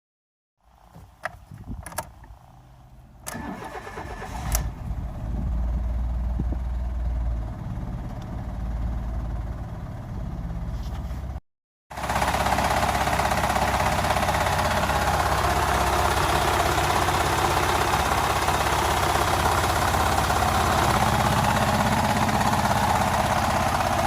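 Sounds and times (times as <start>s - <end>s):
car engine idling: 2.2s - 10.8s, 12.0s - 24.0s
car engine starter cranking: 3.2s - 4.8s
engine clatter: 3.2s - 24.0s.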